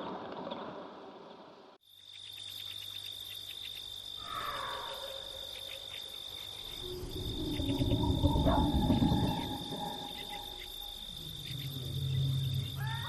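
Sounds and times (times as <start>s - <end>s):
crickets chirring: 1.8s - 13.0s
low rumble: 6.5s - 13.0s.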